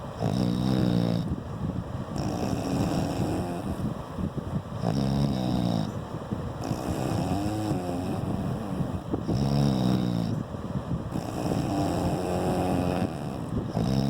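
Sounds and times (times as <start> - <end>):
heavy noisy breathing: 0.0 - 14.0
person snoring: 0.2 - 1.3, 2.2 - 3.9, 4.8 - 6.0, 6.6 - 10.4, 11.1 - 14.0.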